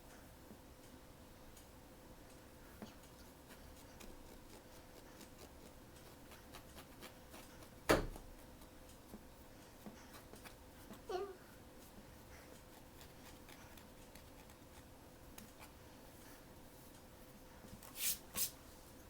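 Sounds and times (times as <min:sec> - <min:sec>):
faint steady hum: 0:00.0 - 0:19.0.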